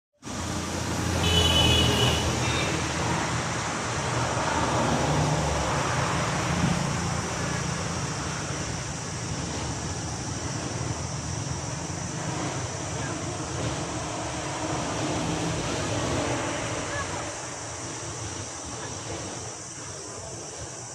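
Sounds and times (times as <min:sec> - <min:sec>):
vehicle passing: 0:00.2 - 0:19.4
road traffic rumble: 0:00.2 - 0:20.9.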